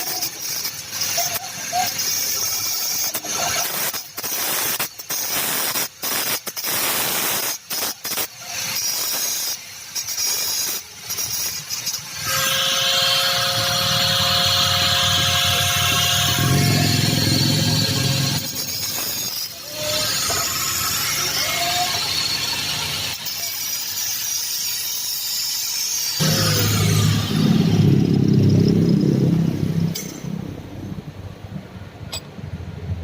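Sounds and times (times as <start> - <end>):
power tool whining squeal: 0.0 - 5.3, 8.3 - 29.3
rasping tool noise: 0.0 - 29.2.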